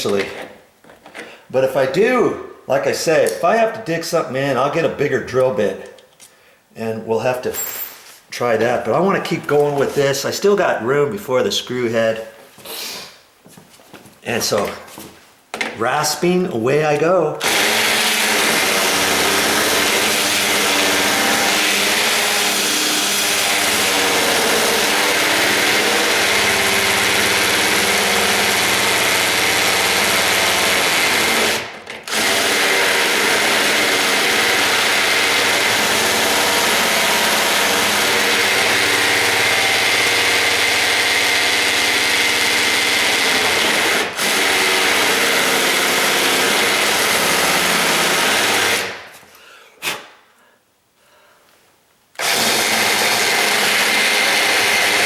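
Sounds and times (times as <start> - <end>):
electric drill grinding metal: 17.4 - 49.0, 52.2 - 55.0.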